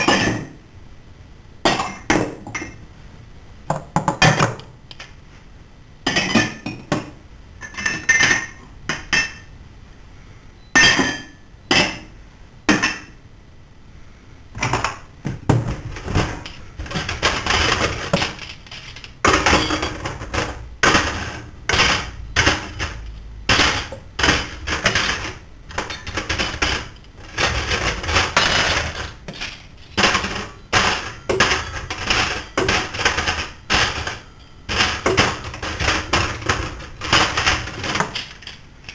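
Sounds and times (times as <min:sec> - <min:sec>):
dishes and cutlery clinking: 0:00.0 - 0:00.6, 0:06.1 - 0:09.5, 0:10.8 - 0:12.1.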